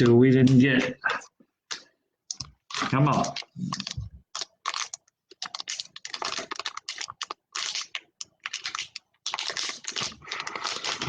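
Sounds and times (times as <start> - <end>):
trading cards flicking and rustling: 1.7 - 11.0.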